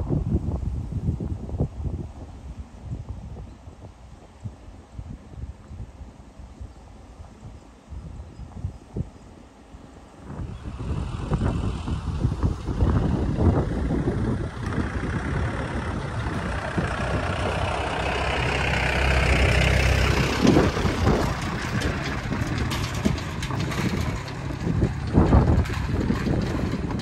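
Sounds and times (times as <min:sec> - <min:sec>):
engine running with low rumble: 0:08.5 - 0:27.0.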